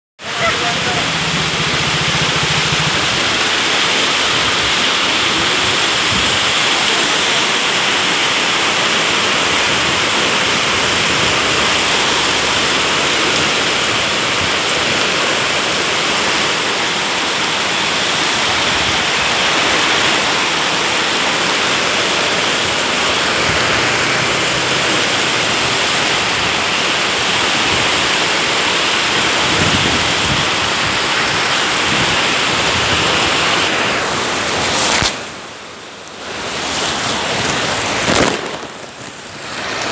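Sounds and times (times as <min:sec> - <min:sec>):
heavy rain pouring: 0:00.2 - 0:39.9.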